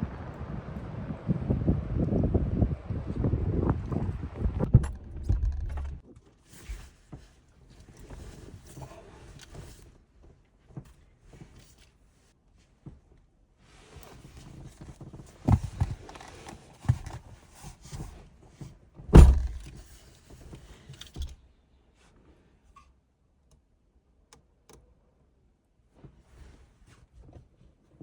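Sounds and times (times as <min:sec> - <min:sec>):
heavy door thump: 0:04.6 - 0:06.0, 0:19.1 - 0:19.7
thumps of climbing into truck: 0:19.1 - 0:19.8.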